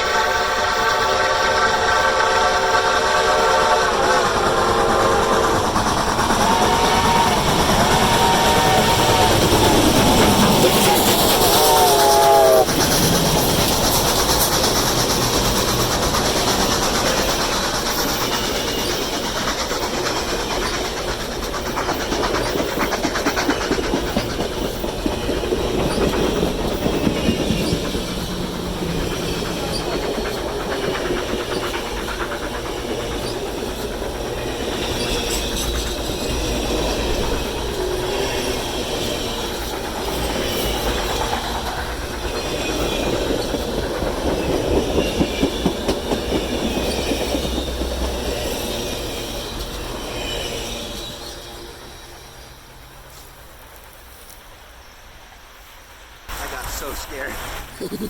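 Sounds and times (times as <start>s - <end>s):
steam locomotive whistle: 0.0s - 14.6s
wheels clattering on rail joints: 0.0s - 54.6s
train rumbling: 0.0s - 58.0s.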